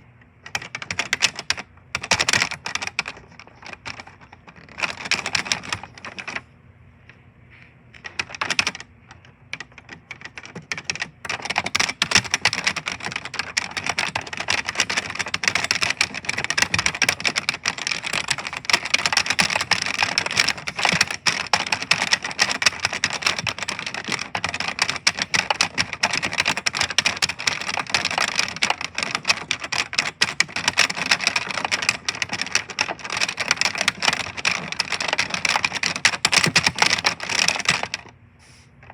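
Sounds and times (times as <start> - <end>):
keyboard typing: 0.4 - 6.4, 8.0 - 38.1.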